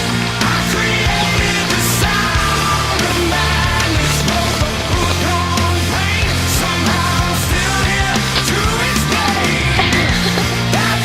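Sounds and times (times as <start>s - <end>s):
heavy rock music: 0.0s - 11.0s.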